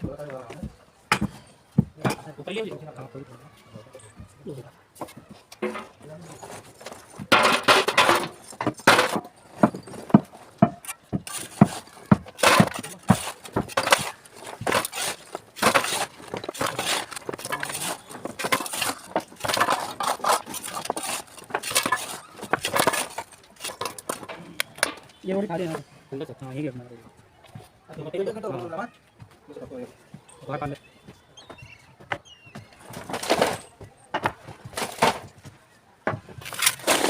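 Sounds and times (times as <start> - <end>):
brick pieces clattering and scraping: 5.0 - 25.8, 32.1 - 37.0.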